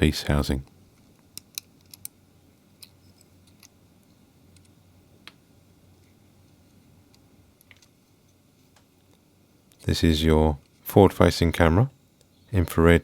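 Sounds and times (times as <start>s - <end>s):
light clicks of phone parts: 1.0s - 2.2s.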